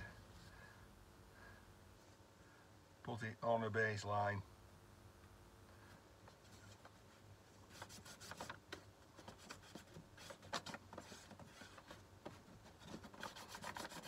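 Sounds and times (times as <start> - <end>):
paper rustling and rubbing: 6.3 - 14.0.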